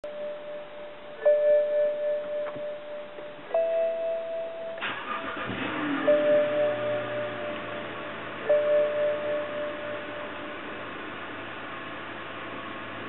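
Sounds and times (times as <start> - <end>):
chime tones: 0.0 - 10.8
car engine idling: 3.1 - 13.0
starter motor cranking: 4.8 - 6.2.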